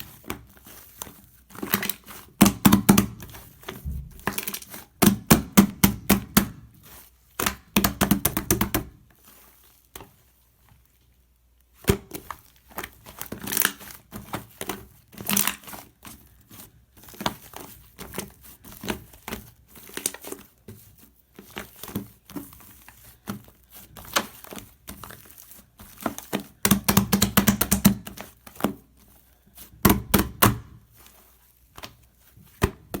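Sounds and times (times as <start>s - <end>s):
slime squishing with crackling pops: 0.0s - 9.1s, 21.3s - 28.9s, 29.7s - 31.0s.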